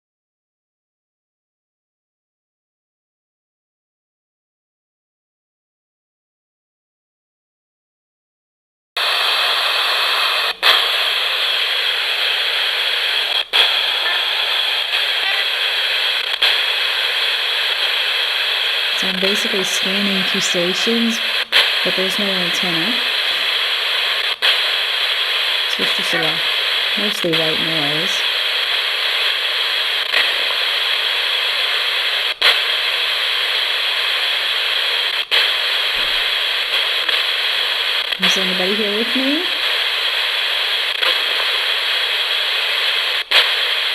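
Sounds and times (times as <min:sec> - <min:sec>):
radio click: 0:09.0 - 0:43.9
radio static hiss: 0:09.0 - 0:43.9.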